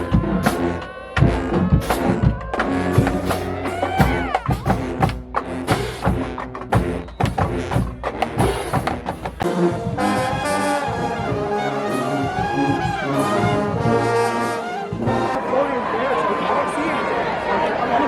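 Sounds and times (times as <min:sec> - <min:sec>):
brass chords: 0:00.0 - 0:15.5
drum strikes: 0:00.1 - 0:10.5.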